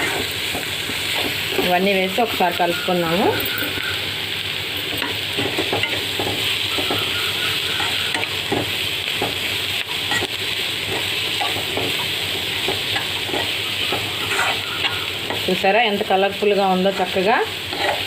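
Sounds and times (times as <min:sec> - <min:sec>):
vegetables sizzling in oil: 0:00.0 - 0:18.0
spoon scraping and knocking pan: 0:04.8 - 0:15.6, 0:16.9 - 0:18.0.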